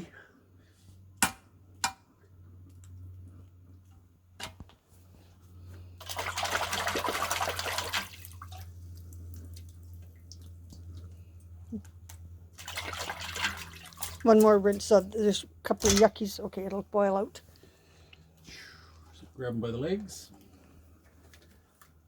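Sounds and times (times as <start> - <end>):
steady low hum: 0.0 - 22.0
water splashing: 6.0 - 10.6, 12.5 - 14.8.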